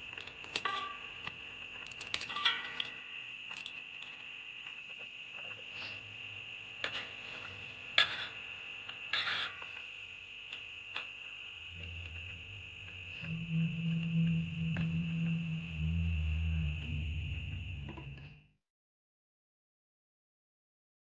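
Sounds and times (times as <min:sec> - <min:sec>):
steady high-pitched whine: 0:09.8 - 0:18.5.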